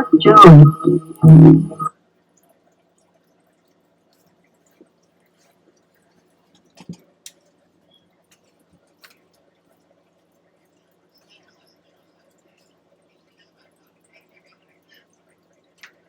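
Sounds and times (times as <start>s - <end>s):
low steady hum: 0.0s - 1.9s
faint clicks and ticks: 0.0s - 16.0s.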